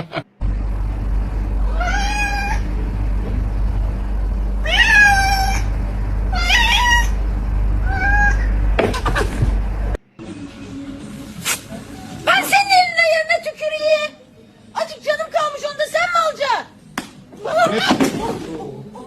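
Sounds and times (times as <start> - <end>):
steady low hum: 0.0 - 12.3
cat meowing: 1.7 - 2.6, 4.6 - 5.7, 6.3 - 7.2, 7.8 - 8.5.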